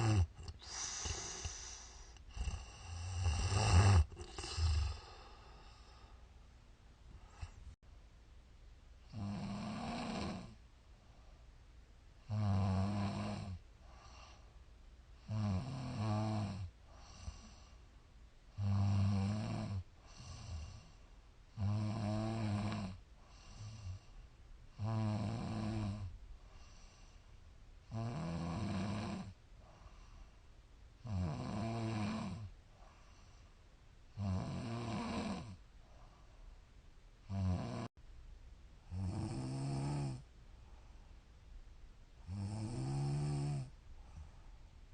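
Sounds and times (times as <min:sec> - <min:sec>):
woman snoring: 0:00.0 - 0:06.1, 0:09.1 - 0:10.6, 0:12.3 - 0:13.6, 0:15.3 - 0:17.6, 0:18.6 - 0:21.0, 0:21.6 - 0:24.1, 0:24.8 - 0:26.1, 0:27.9 - 0:29.4, 0:31.0 - 0:32.5, 0:34.2 - 0:35.6, 0:37.3 - 0:37.9, 0:38.9 - 0:40.3, 0:42.2 - 0:43.7
quiet breath: 0:00.0 - 0:07.8, 0:10.4 - 0:12.4, 0:13.2 - 0:15.6, 0:16.2 - 0:27.6, 0:28.8 - 0:30.8, 0:32.3 - 0:36.8, 0:38.8 - 0:42.4, 0:43.0 - 0:44.9.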